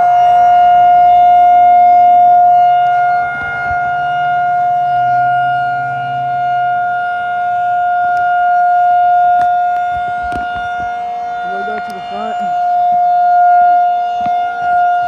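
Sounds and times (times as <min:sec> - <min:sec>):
rotating siren steady tone: 0:00.0 - 0:15.0.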